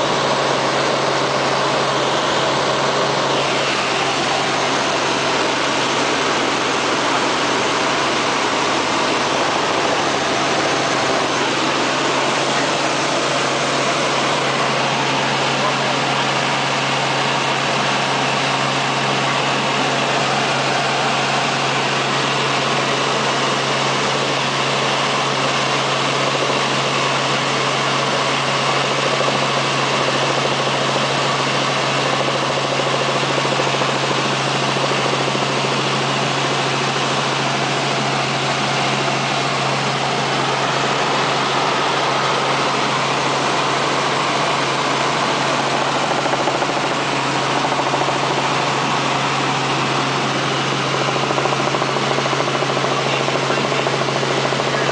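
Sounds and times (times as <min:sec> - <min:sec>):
helicopter engine and rotor drone: 0:00.0 - 0:54.9.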